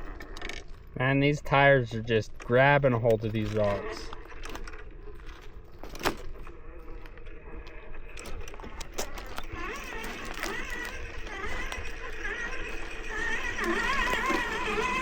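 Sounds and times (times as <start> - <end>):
electric motor whine: 0.0 - 1.0, 2.2 - 15.0
tires knocking on rocks: 8.2 - 15.0.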